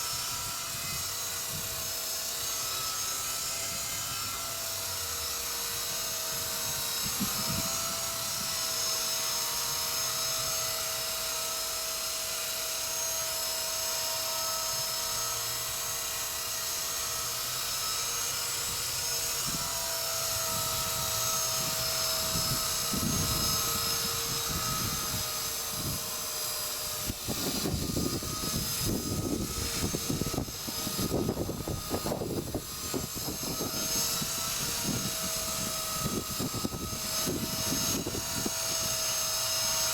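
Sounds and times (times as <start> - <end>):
wind buffeting microphone: 0.0 - 2.0, 6.2 - 8.8, 18.6 - 39.9
rc helicopter motor whine: 0.0 - 39.9.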